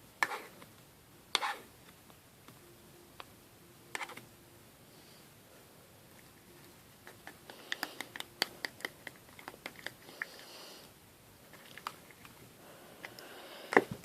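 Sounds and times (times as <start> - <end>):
slime being stirred: 7.0 - 10.5.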